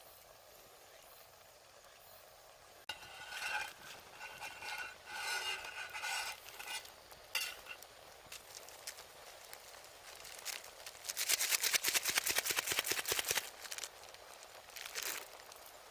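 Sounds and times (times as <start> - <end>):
utensil scraping cooking pan: 2.9 - 8.0.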